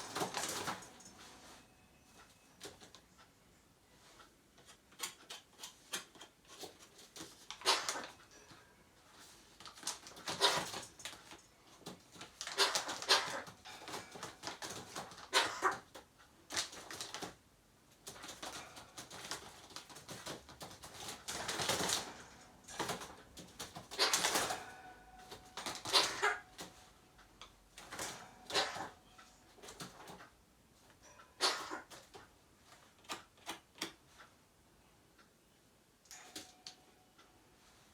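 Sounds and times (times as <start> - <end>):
magpie harsh calls: 12.5 - 13.6, 23.8 - 24.6, 25.6 - 26.5, 28.5 - 29.0, 31.4 - 32.0.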